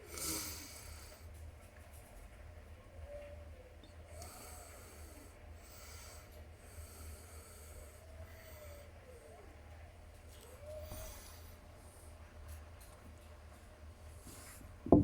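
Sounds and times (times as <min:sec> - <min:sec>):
cat breathing softly: 0:00.0 - 0:01.4, 0:03.9 - 0:12.6, 0:14.0 - 0:14.8
low steady rumble: 0:03.5 - 0:15.0
faint squeaky tones: 0:08.1 - 0:11.4.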